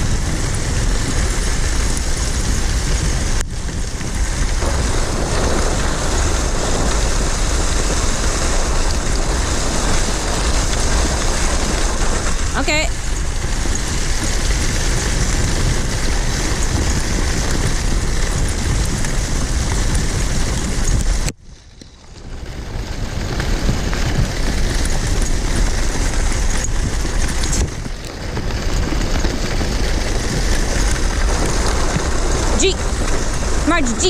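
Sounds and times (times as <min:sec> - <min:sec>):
sled runners scraping over snow: 0:00.0 - 0:34.0
wind rumbling on microphone: 0:00.0 - 0:34.0.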